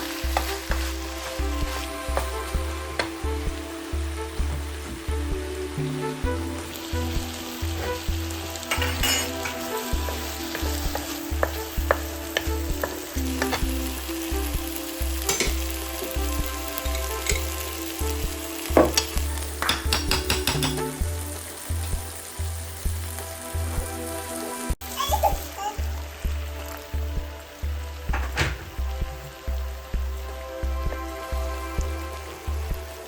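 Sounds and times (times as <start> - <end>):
food sizzling in a frying pan: 0.0 - 33.0.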